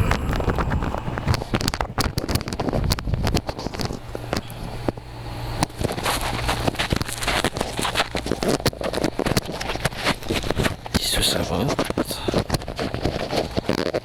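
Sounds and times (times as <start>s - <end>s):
rustling and crinkling wrapping: 0.0s - 14.0s
steady low hum: 0.0s - 14.0s.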